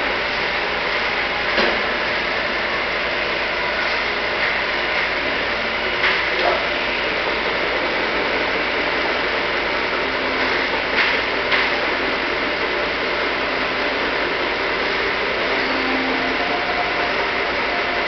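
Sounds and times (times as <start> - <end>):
milling machine running: 0.0 - 18.0
faint high steady tone: 15.4 - 18.0.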